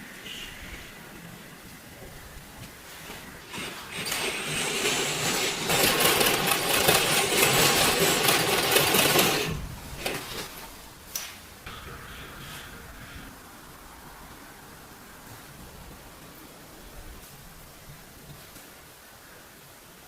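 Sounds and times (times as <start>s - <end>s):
sewing machine clatter: 3.4s - 10.6s.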